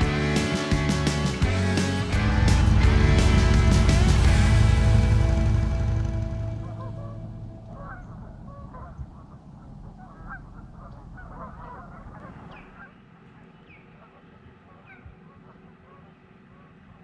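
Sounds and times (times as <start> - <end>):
birds chirping: 0.0 - 17.0.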